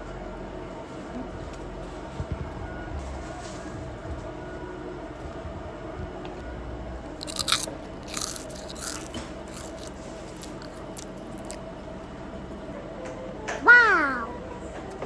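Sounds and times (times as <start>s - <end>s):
steady background hum: 0.0s - 15.0s
crunchy food chewing: 7.2s - 11.7s.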